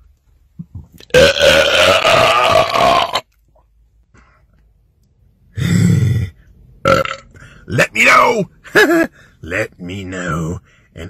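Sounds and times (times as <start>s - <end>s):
man belching: 1.0s - 3.3s, 6.9s - 7.3s.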